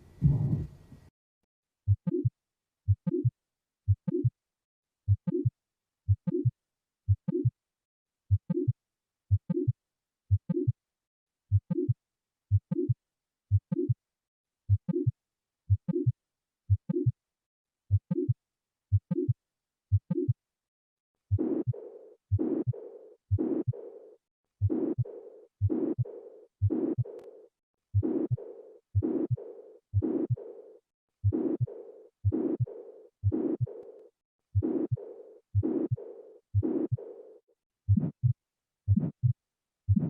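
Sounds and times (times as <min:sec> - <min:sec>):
heartbeat lub-dub sounds: 0:00.0 - 0:01.1, 0:01.9 - 0:02.3, 0:02.9 - 0:04.3, 0:05.1 - 0:05.5, 0:06.1 - 0:06.5, 0:07.1 - 0:07.5, 0:08.3 - 0:10.7, 0:11.5 - 0:14.0, 0:14.7 - 0:15.1, 0:15.7 - 0:17.1, 0:17.9 - 0:20.4, 0:21.3 - 0:27.4, 0:28.0 - 0:34.0, 0:34.6 - 0:40.0
harsh noisy heart sounds: 0:00.1 - 0:00.8, 0:28.0 - 0:30.5, 0:31.2 - 0:33.8, 0:34.6 - 0:37.2, 0:37.9 - 0:40.0.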